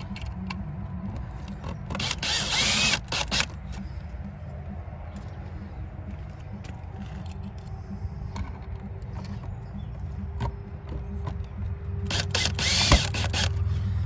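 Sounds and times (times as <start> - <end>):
low steady rumble: 0.0 - 14.0
small parts clicking and tapping: 10.4 - 13.7.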